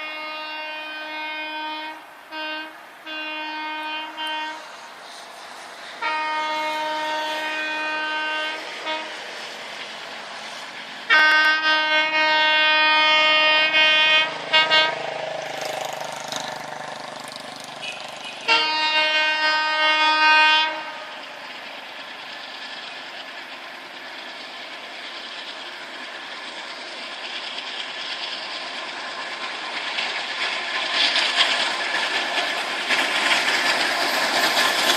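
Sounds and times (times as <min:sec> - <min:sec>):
train horn blasts: 0:00.0 - 0:04.7, 0:06.0 - 0:09.2, 0:11.1 - 0:15.2, 0:17.8 - 0:21.3
running train noise: 0:00.0 - 0:34.9.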